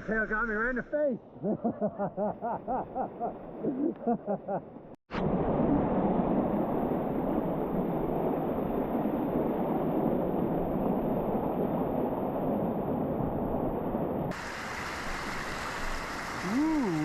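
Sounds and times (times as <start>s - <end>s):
waterfall rushing: 14.3s - 17.0s.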